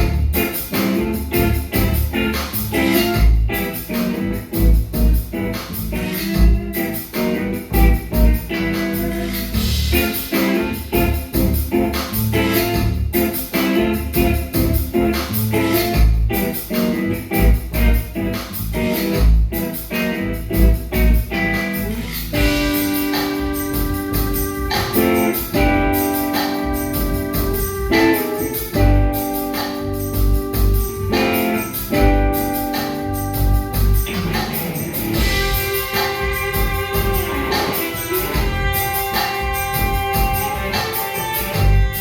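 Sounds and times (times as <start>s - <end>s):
band playing live: 0.0s - 42.0s
steady low beat: 0.0s - 42.0s
long held chords: 22.4s - 42.0s.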